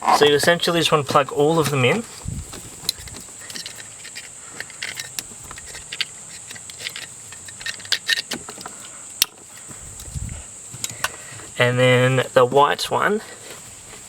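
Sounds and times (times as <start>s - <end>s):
plastic connectors clicking: 2.8s - 9.4s.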